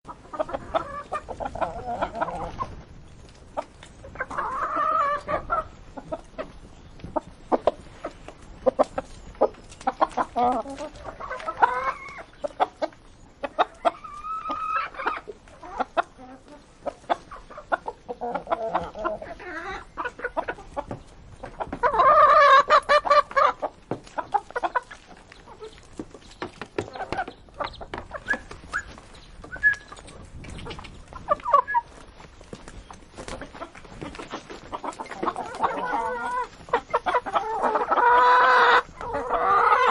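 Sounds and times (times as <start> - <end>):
chickens clucking: 0.1 - 39.9
chickens pecking: 0.1 - 39.9.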